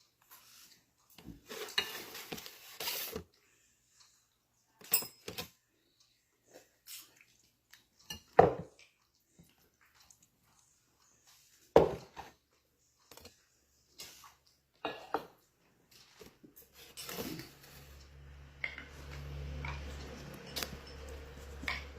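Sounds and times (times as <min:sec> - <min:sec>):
spoon scraping a plate: 0:01.5 - 0:03.2
dishes clinking and knocking: 0:08.1 - 0:08.8, 0:11.7 - 0:12.3, 0:14.9 - 0:15.4, 0:18.6 - 0:21.9.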